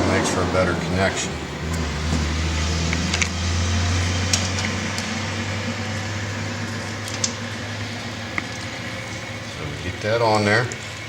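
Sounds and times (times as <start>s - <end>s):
low machine hum: 0.0s - 4.3s.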